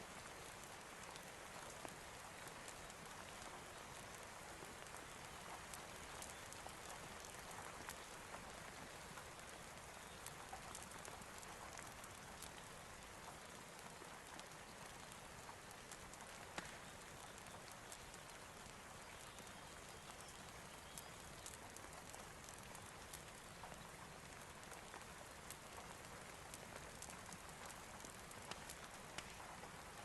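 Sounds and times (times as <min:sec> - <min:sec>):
faint rain: 0:00.0 - 0:30.0.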